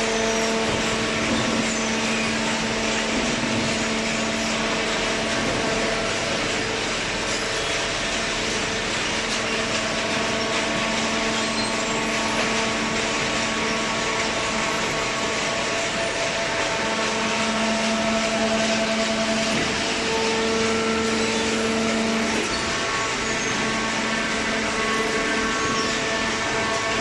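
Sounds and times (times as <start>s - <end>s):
baler motor humming: 0.0s - 27.0s.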